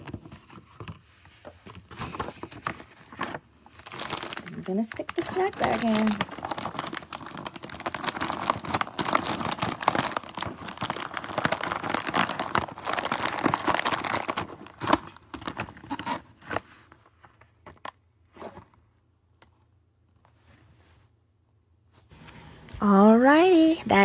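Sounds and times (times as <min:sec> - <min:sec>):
plastic chip bag crinkling: 0:02.0 - 0:16.6.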